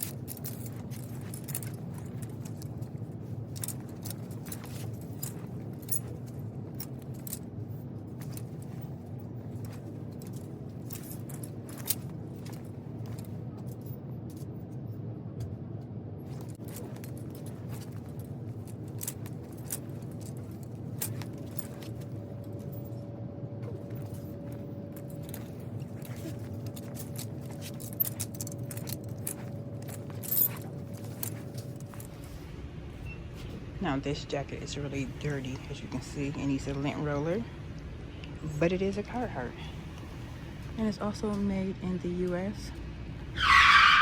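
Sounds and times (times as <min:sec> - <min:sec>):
light clicks and rattles: 0:00.0 - 0:32.5
low hum: 0:00.0 - 0:43.4.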